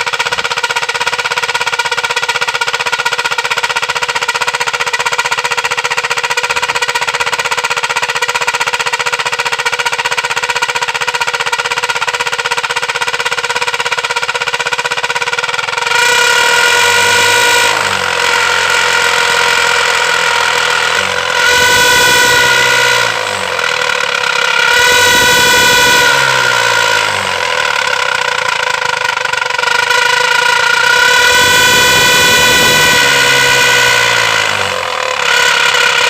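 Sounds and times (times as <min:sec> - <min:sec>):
motorcycle engine firing pulses: 0:00.0 - 0:36.0
buzzing horn-like exhaust tone: 0:15.5 - 0:36.0.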